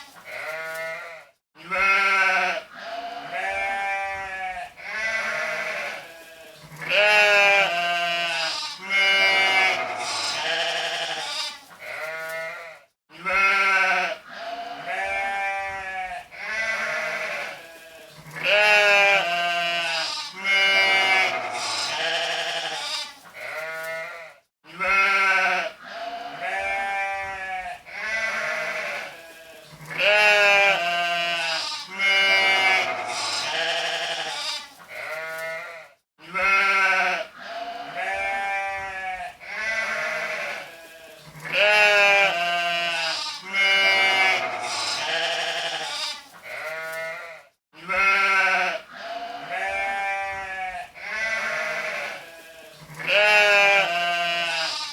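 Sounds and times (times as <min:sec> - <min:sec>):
sheep bleating: 0:00.0 - 0:54.9.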